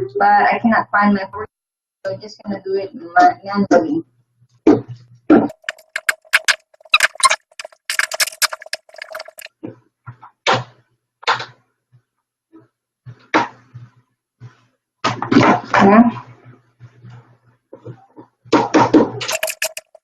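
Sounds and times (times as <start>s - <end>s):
screwdriver scrapes: 5.5s - 9.5s, 19.2s - 20.0s
steady squeak: 5.5s - 9.5s.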